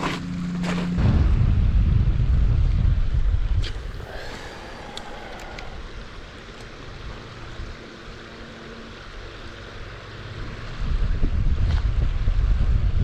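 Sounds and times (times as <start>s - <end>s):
wind buffeting microphone: 1.0s - 6.2s, 10.6s - 13.0s.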